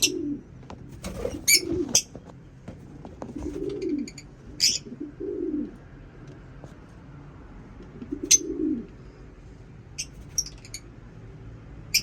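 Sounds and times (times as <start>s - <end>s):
dove-like cooing: 0.0s - 2.2s, 3.1s - 5.9s, 7.9s - 9.1s
lovebirds chirping: 1.3s - 2.1s, 3.7s - 4.9s, 10.0s - 10.8s.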